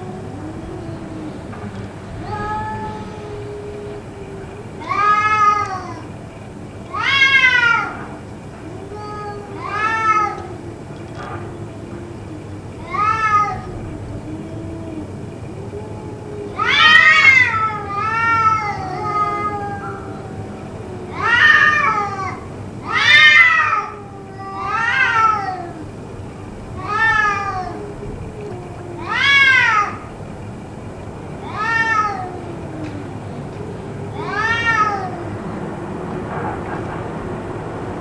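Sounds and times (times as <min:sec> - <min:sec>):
cat yowling: 0:00.0 - 0:37.5
low wavering moan: 0:00.0 - 0:38.0.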